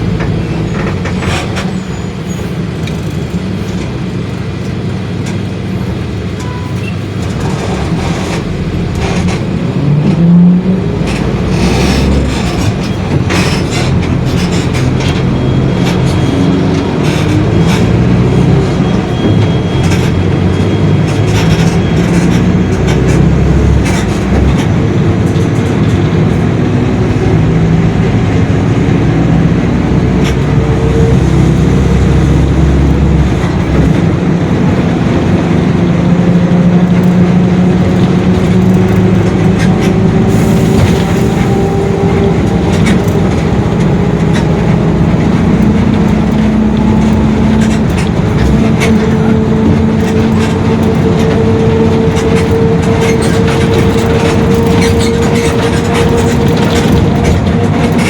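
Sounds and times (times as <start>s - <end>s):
bus diesel engine drone: 0.0s - 58.0s
clicks and rattles: 42.4s - 58.0s.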